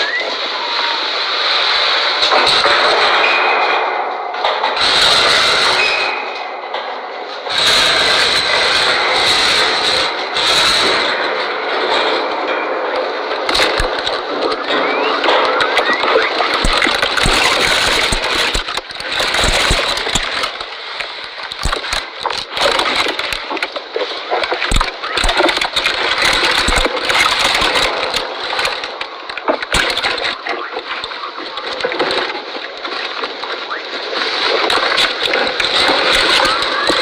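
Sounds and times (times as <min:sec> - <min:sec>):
camel chewing: 0:21.5 - 0:37.0.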